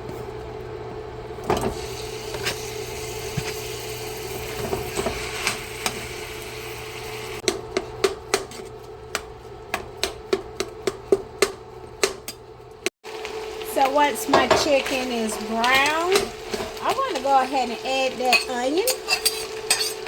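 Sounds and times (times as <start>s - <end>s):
meat sizzling in a pan: 1.7s - 7.4s, 13.0s - 20.0s.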